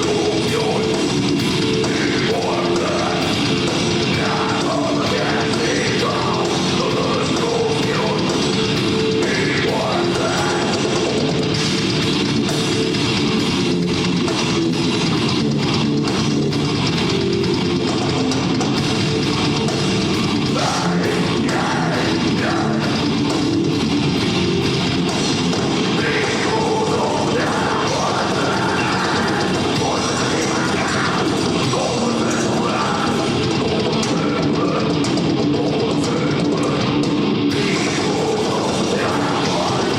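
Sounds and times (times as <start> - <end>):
distorted electric guitars: 0.0 - 39.9
drum kit: 0.0 - 39.9.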